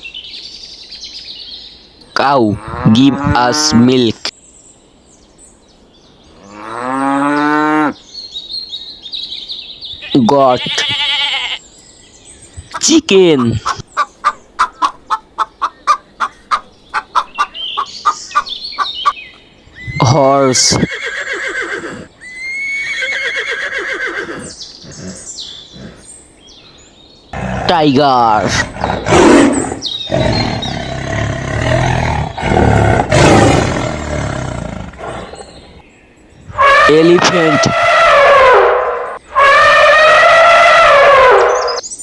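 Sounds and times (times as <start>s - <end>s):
chicken drawn-out calls: 12.8s - 25.1s, 36.5s - 41.8s
chicken clucking: 13.4s - 19.2s
tiger roaring: 24.2s - 26.1s, 27.4s - 35.8s, 36.5s - 41.8s.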